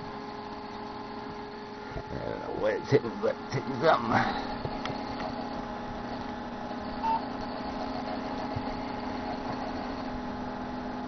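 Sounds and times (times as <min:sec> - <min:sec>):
short computer beep: 0:07.0 - 0:07.3.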